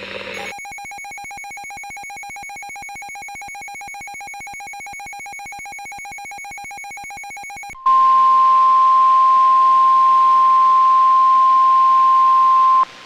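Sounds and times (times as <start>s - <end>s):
steady single-pitch alarm tone: 0.1s - 12.8s
fast-pulsing electronic beep: 0.3s - 7.8s.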